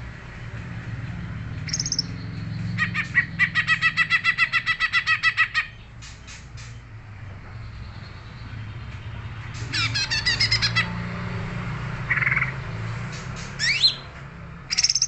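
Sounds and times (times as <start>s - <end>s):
bird singing sharp notes: 1.6s - 3.2s.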